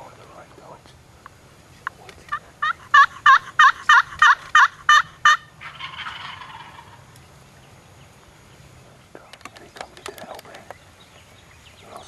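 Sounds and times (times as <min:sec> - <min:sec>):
turkey yelping: 0:02.3 - 0:07.0.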